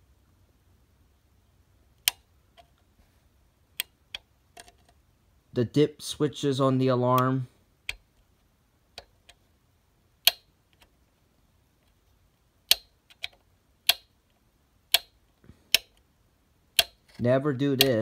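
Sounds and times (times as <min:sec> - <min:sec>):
switches clicking: 0:10.2 - 0:10.9, 0:12.7 - 0:14.1, 0:16.7 - 0:17.1, 0:17.8 - 0:18.0.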